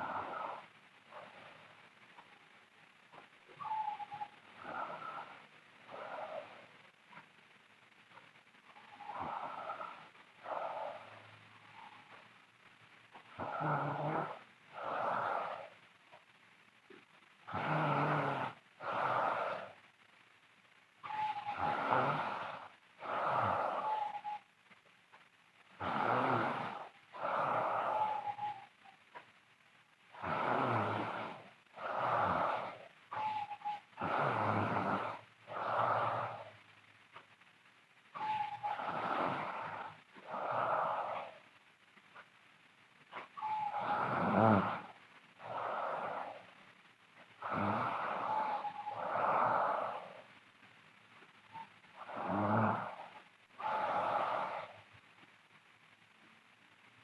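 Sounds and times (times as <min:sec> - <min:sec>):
whistle in breaths: 0:03.6 - 0:05.3, 0:21.0 - 0:22.4, 0:23.0 - 0:24.5, 0:32.0 - 0:34.5, 0:38.2 - 0:39.8, 0:43.1 - 0:44.4, 0:51.5 - 0:52.2
girl snoring loudly: 0:04.6 - 0:06.6, 0:13.4 - 0:15.7, 0:17.5 - 0:19.8, 0:21.0 - 0:24.2, 0:25.8 - 0:28.6, 0:30.1 - 0:33.2, 0:34.0 - 0:36.5, 0:38.2 - 0:41.4, 0:43.4 - 0:46.4, 0:47.4 - 0:50.3, 0:52.0 - 0:54.8.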